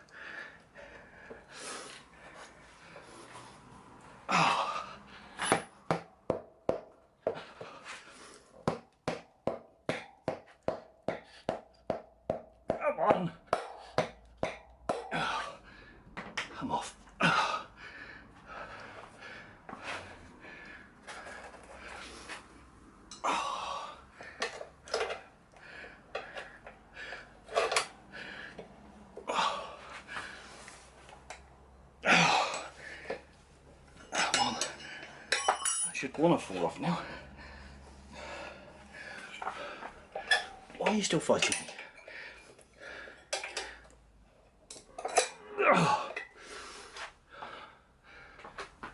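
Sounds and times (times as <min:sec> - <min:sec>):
man gasping and breathing hard: 0:04.2 - 0:05.6, 0:13.4 - 0:22.4, 0:23.2 - 0:28.6, 0:29.2 - 0:30.7, 0:32.0 - 0:33.4, 0:36.8 - 0:40.4, 0:45.6 - 0:48.7.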